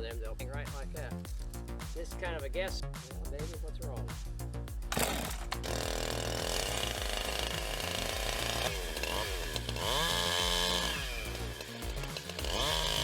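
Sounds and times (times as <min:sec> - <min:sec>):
chainsaw cutting into tree: 0:04.9 - 0:13.0.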